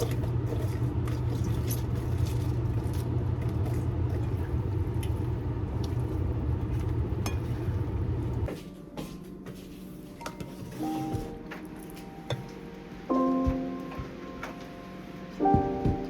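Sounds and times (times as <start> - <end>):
steady low rumble: 0.0 - 8.5.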